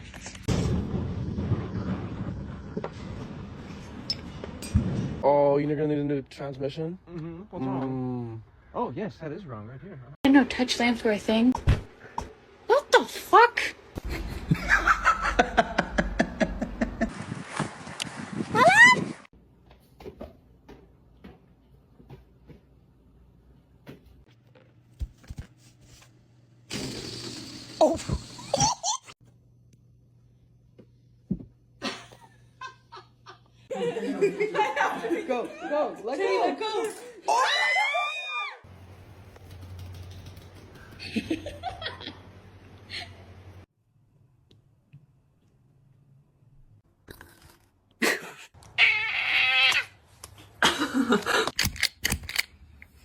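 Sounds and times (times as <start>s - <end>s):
cat meowing: 48.8s - 49.9s.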